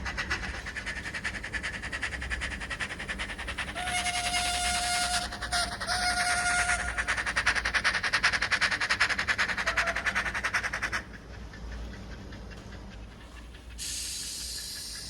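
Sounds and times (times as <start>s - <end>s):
steam exhaust chuffs: 0.0s - 15.0s
model steam whistle: 3.7s - 7.0s.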